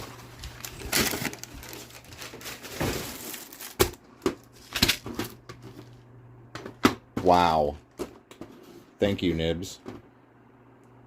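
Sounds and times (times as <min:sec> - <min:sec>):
paper crinkling: 0:00.0 - 0:03.9.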